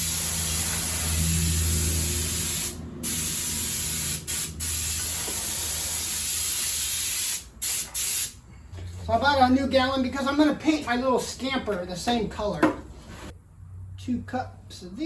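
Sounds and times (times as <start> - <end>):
paint spray gun hissing: 0.0 - 8.3.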